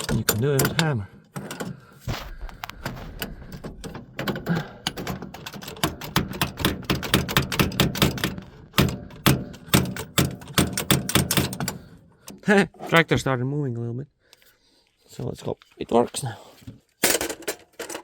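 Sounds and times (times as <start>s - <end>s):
tractor engine running: 0.0s - 12.4s
hammer tapping on metal: 5.7s - 11.8s.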